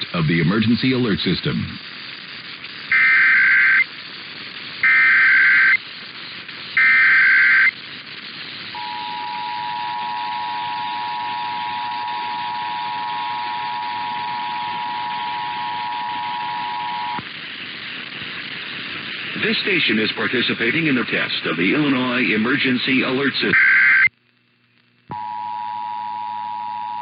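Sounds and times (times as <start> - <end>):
warbling data tones: 0.0 - 21.0, 21.8 - 24.1
faint steady hiss: 0.0 - 27.0
two-tone attention signal: 2.9 - 3.8, 4.8 - 5.8, 6.8 - 7.7, 8.8 - 17.2.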